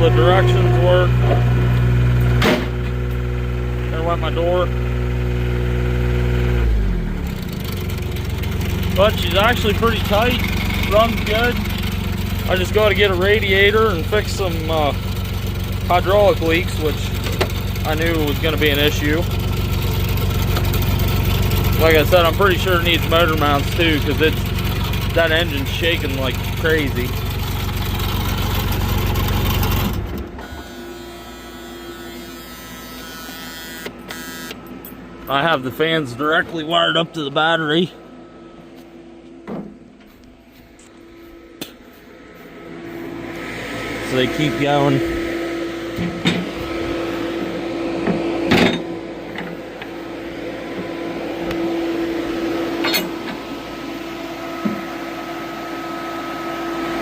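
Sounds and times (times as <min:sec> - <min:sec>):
diesel engine running roughly: 0:00.0 - 0:38.3, 0:40.1 - 0:57.0
radiator fans humming: 0:07.9 - 0:57.0.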